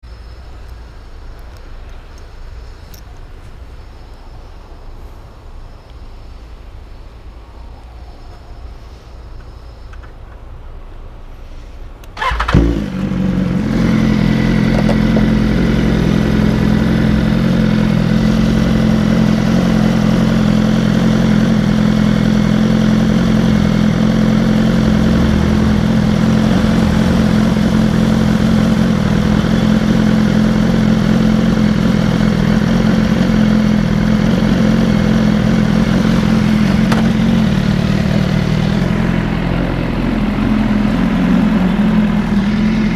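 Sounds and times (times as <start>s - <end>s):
motorcycle engine starting and idling: 12.0s - 42.9s.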